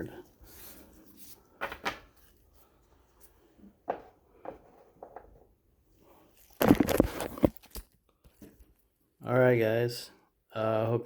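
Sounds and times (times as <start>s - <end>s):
cards and foil wrapper rustling: 6.4s - 8.0s.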